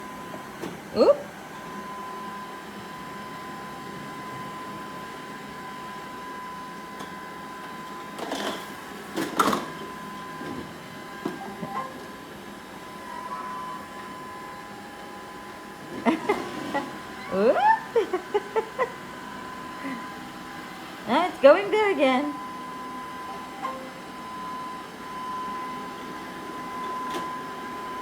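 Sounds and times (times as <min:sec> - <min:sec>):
robot vacuum motor hum and whine: 0:00.0 - 0:28.0.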